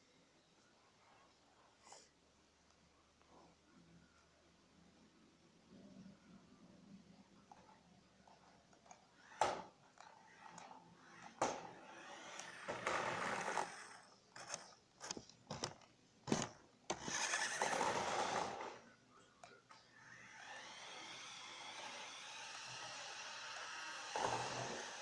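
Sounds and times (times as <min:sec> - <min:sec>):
toy car motor and wheels scraping: 0:08.9 - 0:18.8, 0:19.9 - 0:25.0.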